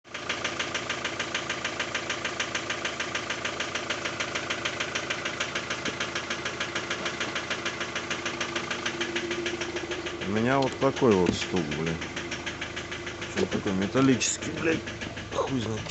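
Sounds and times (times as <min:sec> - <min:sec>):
engine idling with metallic knock: 0:00.1 - 0:15.9.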